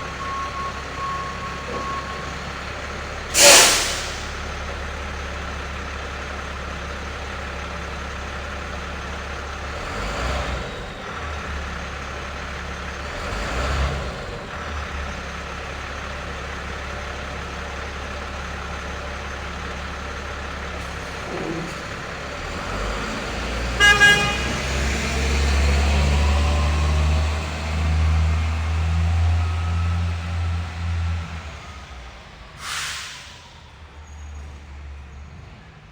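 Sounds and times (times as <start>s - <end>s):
truck engine revving: 0.0s - 4.7s, 9.3s - 15.9s, 19.3s - 35.6s
truck engine idling: 0.0s - 35.9s
truck horn toot: 3.3s - 4.3s, 23.7s - 24.9s.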